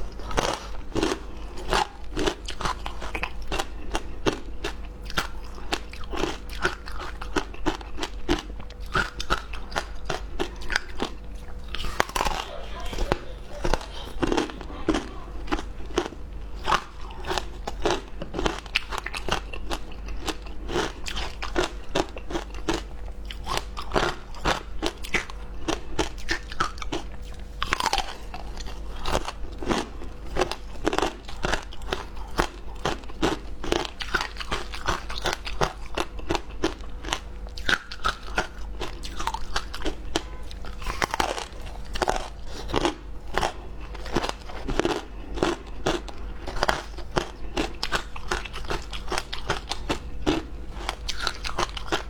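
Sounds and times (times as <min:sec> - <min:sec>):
ice being chewed: 0:00.0 - 0:52.0.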